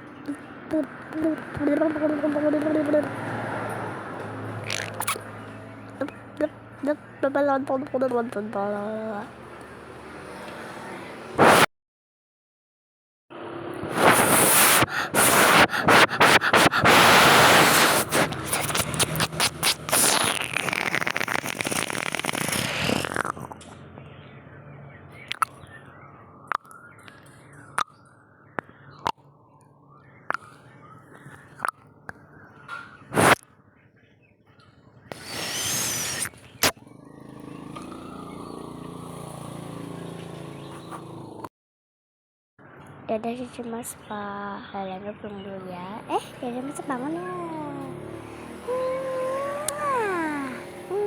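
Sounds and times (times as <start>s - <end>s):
loud rushing noise: 11.4s - 11.7s, 13.8s - 20.0s
small engine running: 13.4s - 23.6s, 35.1s - 41.5s, 46.3s - 51.0s.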